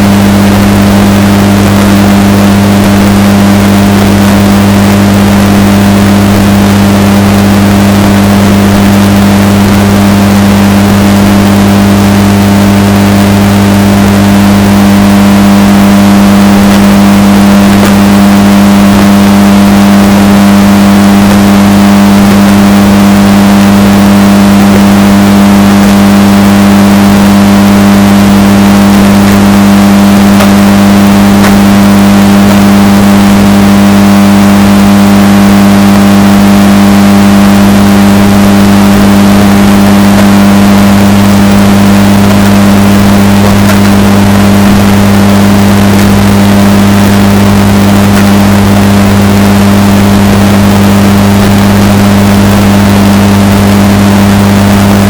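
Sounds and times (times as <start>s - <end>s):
distorted washing machine hum: 0.0s - 55.0s.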